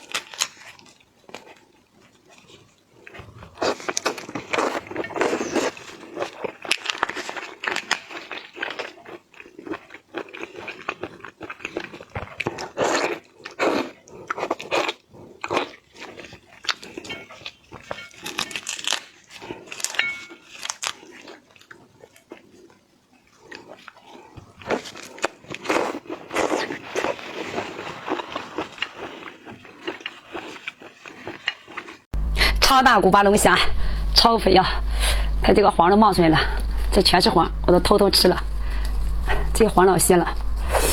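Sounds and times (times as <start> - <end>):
chewing: 0.0 - 32.6, 34.8 - 40.9
crunching through shells: 3.5 - 13.2, 14.4 - 21.8.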